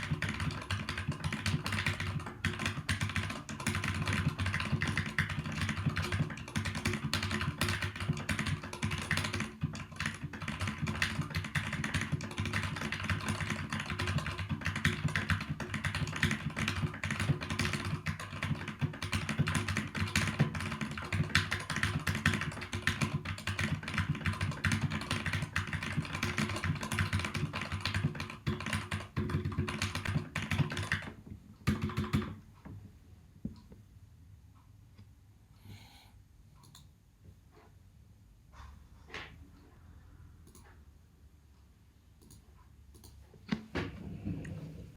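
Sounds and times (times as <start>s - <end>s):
mechanical keyboard typing: 0.0s - 32.4s.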